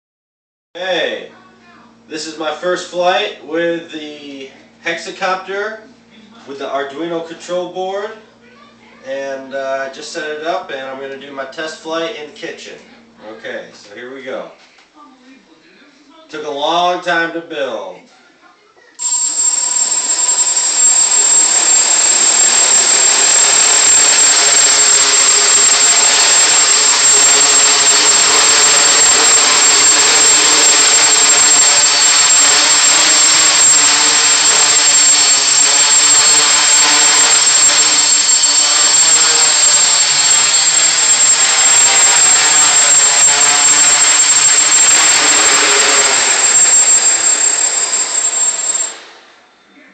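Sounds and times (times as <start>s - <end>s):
thin high whine: 19.0s - 49.7s
drone motors and propellers humming: 19.9s - 48.9s.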